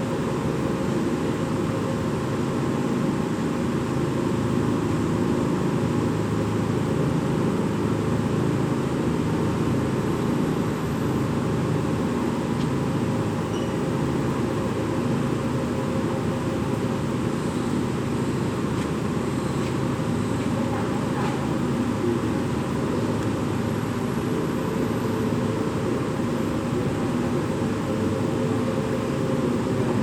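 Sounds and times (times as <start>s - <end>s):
faint hum: 0.0s - 30.0s
machine drone: 0.0s - 30.0s.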